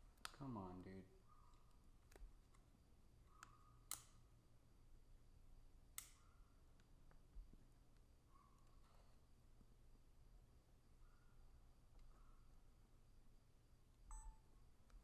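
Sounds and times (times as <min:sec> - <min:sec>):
faint sharp clicks: 0:05.9 - 0:07.2.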